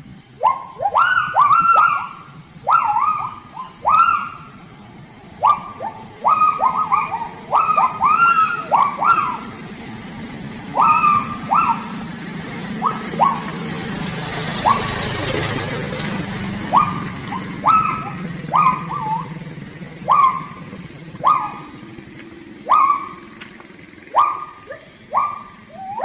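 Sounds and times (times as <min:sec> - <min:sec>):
animal yelping calls: 0:00.4 - 0:23.4, 0:24.0 - 0:26.0.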